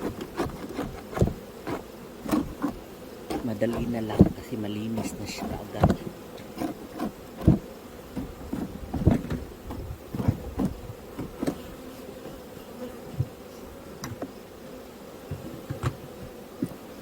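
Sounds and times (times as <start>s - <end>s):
wooden knocks and scrapes: 0.0s - 4.4s, 5.0s - 11.7s
bees buzzing: 0.0s - 17.0s.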